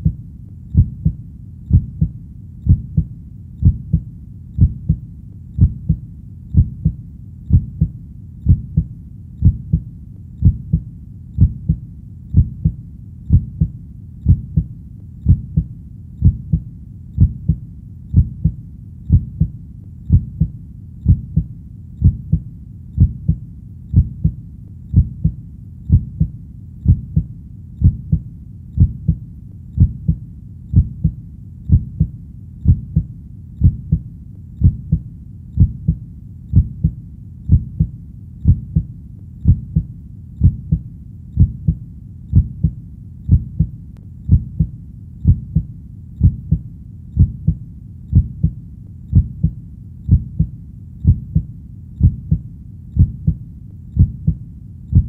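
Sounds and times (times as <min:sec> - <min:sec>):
low background rumble: 0:00.0 - 0:55.0
heartbeat double thud: 0:53.0 - 0:53.4, 0:54.0 - 0:55.0.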